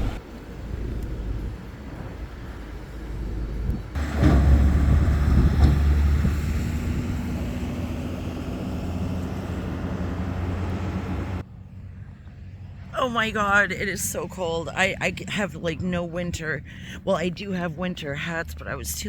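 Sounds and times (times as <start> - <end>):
car engine humming: 0.0 - 17.9.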